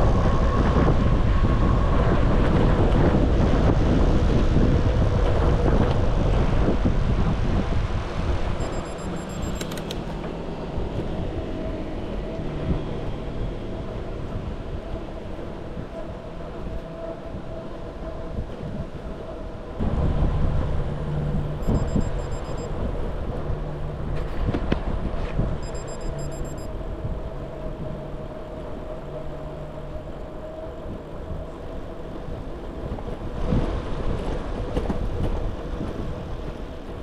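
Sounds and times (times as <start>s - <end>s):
bicycle tyre rumble on road: 0.0s - 8.6s, 26.7s - 37.0s
wind buffeting microphone: 0.0s - 37.0s.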